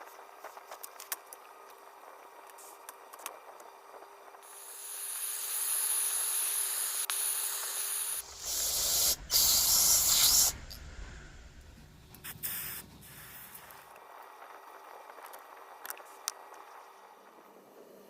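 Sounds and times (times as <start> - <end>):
pressurized spray hissing: 4.4 - 13.7
low rumble: 8.2 - 13.1.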